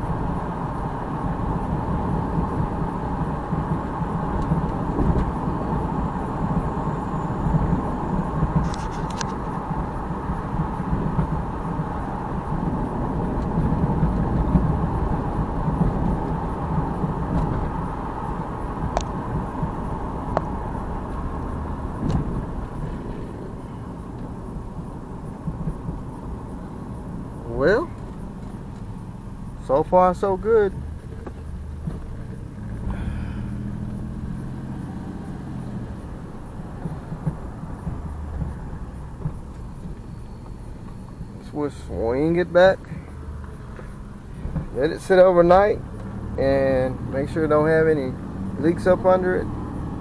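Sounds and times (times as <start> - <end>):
car engine and road noise: 0.0 - 50.0.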